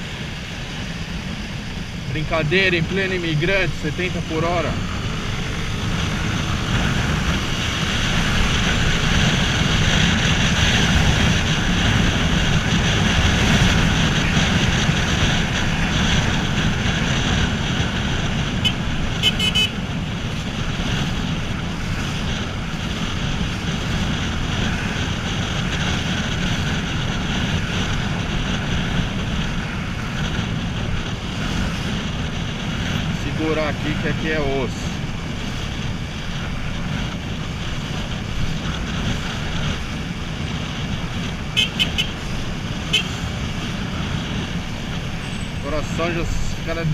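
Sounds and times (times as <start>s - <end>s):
motorcycle engine and road rumble: 0.0s - 46.9s
wind rush over microphone: 0.0s - 46.9s
horn short beeps: 18.7s - 19.8s.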